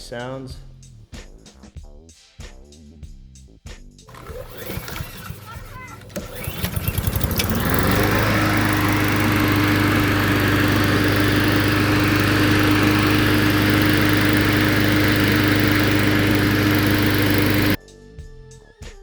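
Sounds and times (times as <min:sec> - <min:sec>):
lawn mower engine starting and running: 0:04.1 - 0:17.8.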